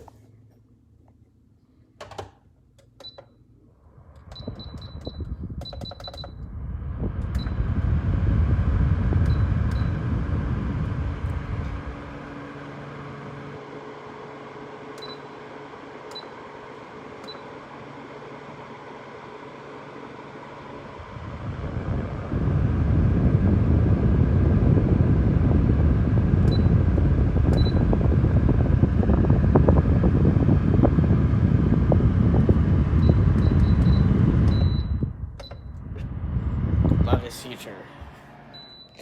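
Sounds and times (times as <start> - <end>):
fan air rush and hum: 3.5 - 39.0
short high beeps: 38.5 - 39.0.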